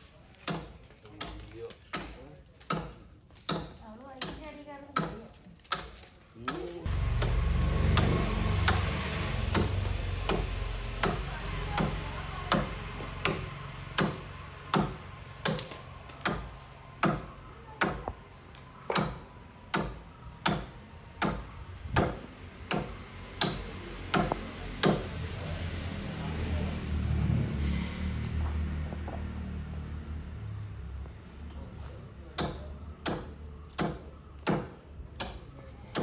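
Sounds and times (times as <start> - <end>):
axe chopping wood: 0.4 - 4.4, 11.8 - 18.2, 18.9 - 21.4, 22.0 - 25.1, 32.4 - 36.0.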